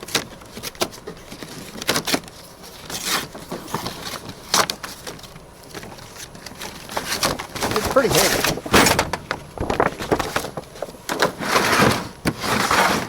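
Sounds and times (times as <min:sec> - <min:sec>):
cardboard packaging tearing: 0:00.5 - 0:13.0.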